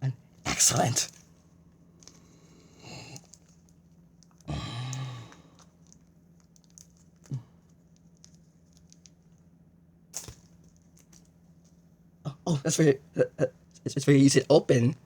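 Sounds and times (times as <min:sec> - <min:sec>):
small clicks: 0:03.1 - 0:09.4.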